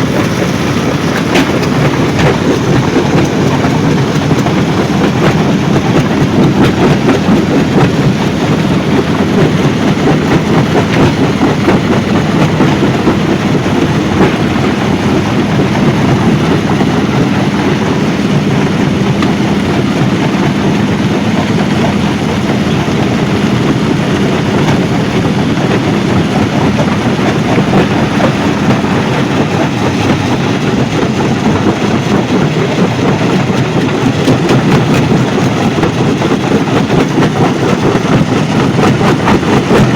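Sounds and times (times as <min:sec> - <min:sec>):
stone crusher machinery rumbling: 0:00.0 - 0:39.9.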